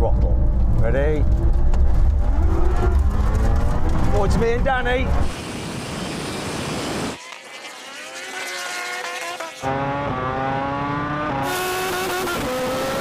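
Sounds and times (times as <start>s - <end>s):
racing engines accelerating: 1.3s - 5.3s, 7.9s - 13.0s.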